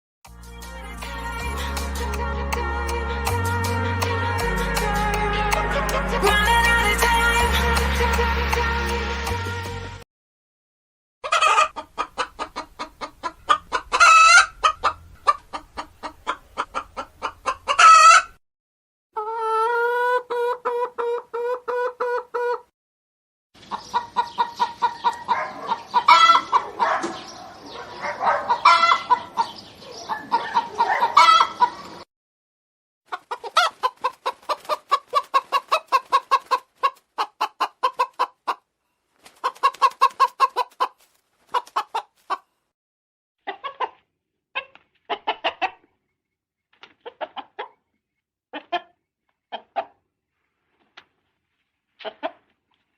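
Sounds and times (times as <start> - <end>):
long drawn-out hen call: 11.2 - 11.8, 13.9 - 15.0, 17.7 - 18.4, 19.2 - 22.7, 24.1 - 26.8, 28.5 - 29.4
hens clucking: 11.2 - 18.3, 19.2 - 22.7, 23.6 - 32.0, 33.1 - 42.5, 43.5 - 45.9, 47.0 - 47.8, 48.5 - 50.0, 52.0 - 52.5.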